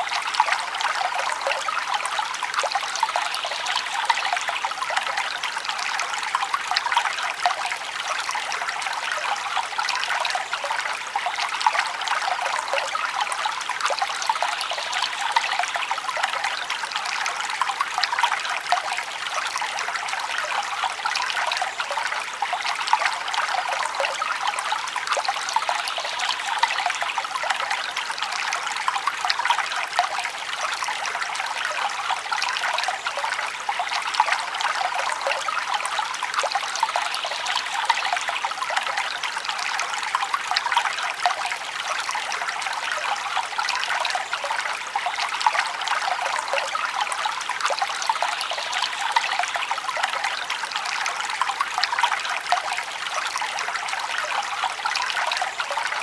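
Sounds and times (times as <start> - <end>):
stream trickling over stones: 0.0 - 56.0.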